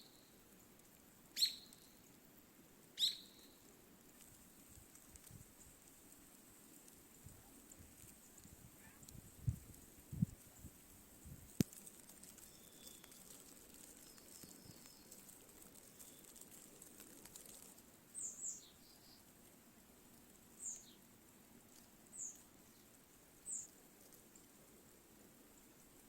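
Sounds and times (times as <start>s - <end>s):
small bird chirping: 0.0s - 0.4s, 1.3s - 2.0s, 3.0s - 3.6s, 12.3s - 16.7s, 17.4s - 19.3s, 20.6s - 21.1s, 22.1s - 24.4s
faint outdoor hush: 0.0s - 26.0s.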